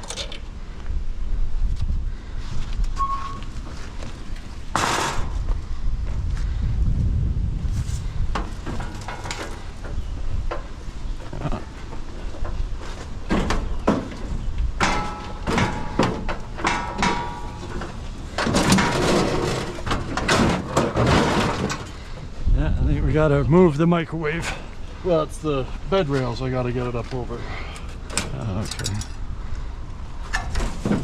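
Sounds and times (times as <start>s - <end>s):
scrap metal clanking and scraping: 4.7s - 5.5s, 7.8s - 10.7s, 11.3s - 22.3s, 30.2s - 31.0s.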